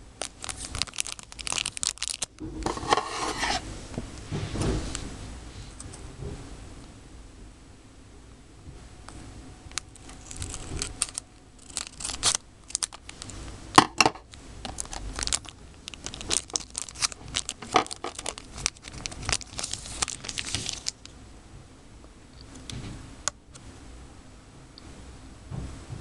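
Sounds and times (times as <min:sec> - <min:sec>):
packaging tearing and crinkling: 0:00.2 - 0:03.6, 0:09.7 - 0:21.1.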